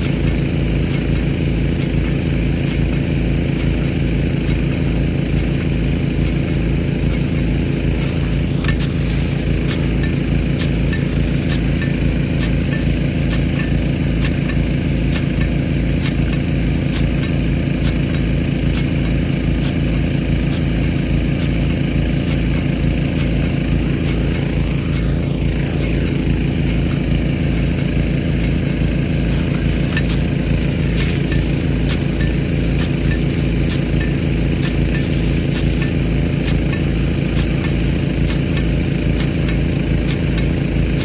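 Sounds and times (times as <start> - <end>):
engine-driven pump running: 0.0 - 41.0
water spraying hiss: 4.4 - 41.0.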